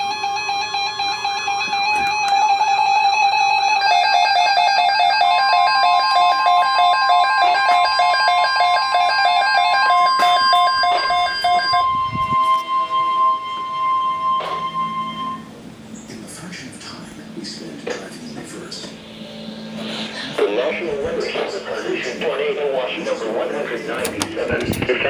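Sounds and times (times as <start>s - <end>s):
steady alert tone: 10.2s - 16.1s, 16.7s - 22.6s.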